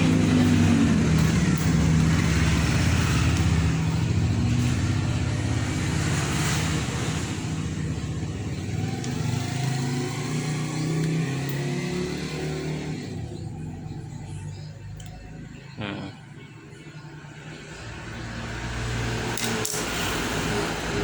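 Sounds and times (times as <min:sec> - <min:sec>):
vehicle engine humming: 0:00.0 - 0:21.0.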